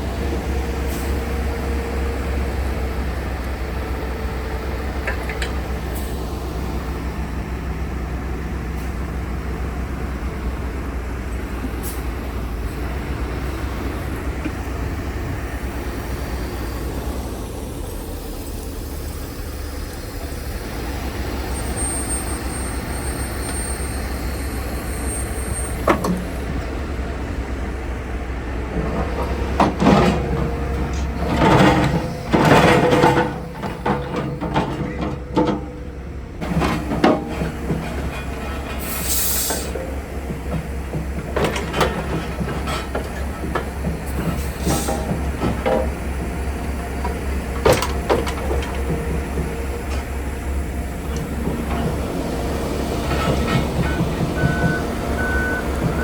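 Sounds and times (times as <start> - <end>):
diesel truck engine running: 0.0 - 56.0
metallic clanks and squeaks: 28.8 - 35.8, 36.4 - 46.0, 53.0 - 56.0
short air hiss: 38.9 - 39.7.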